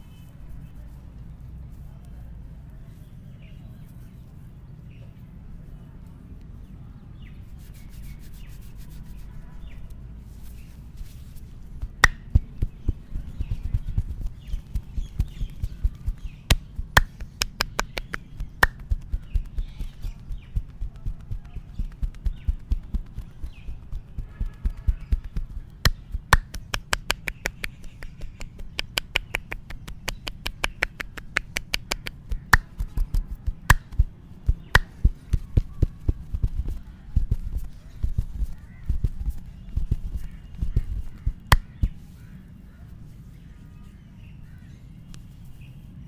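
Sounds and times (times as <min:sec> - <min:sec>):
hands slapping body: 0:11.0 - 0:42.0
loud hand claps: 0:12.0 - 0:12.3, 0:17.0 - 0:19.0, 0:25.8 - 0:32.9.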